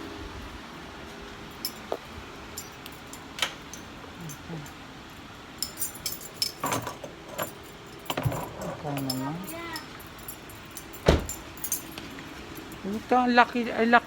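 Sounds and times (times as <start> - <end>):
keys jingling: 1.6 - 4.8, 5.6 - 13.0.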